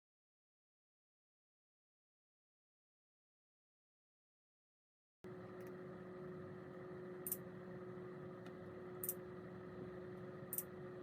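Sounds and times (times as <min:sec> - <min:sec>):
faint steady hum: 0:05.2 - 0:11.0.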